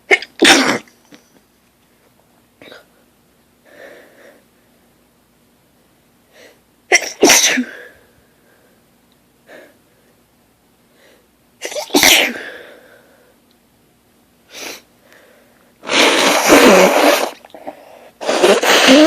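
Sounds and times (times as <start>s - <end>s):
woman sneezing: 0.1s - 0.9s, 6.9s - 7.8s, 11.6s - 12.6s, 15.8s - 19.0s.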